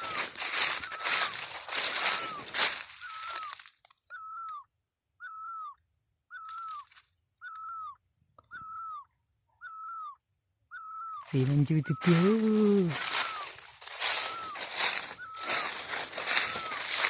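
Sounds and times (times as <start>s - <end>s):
rustling through undergrowth: 0.0s - 3.8s, 11.3s - 17.0s.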